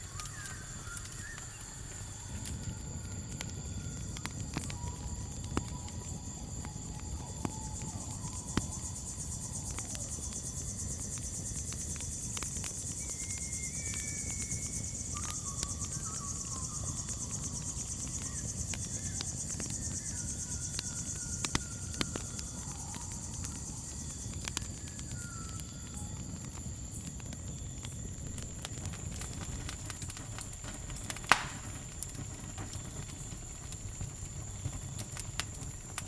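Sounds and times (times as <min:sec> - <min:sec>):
faint wavering animal calls: 0:00.0 - 0:08.4
campfire crackling and popping: 0:00.0 - 0:36.0
crickets chirping: 0:00.0 - 0:36.0.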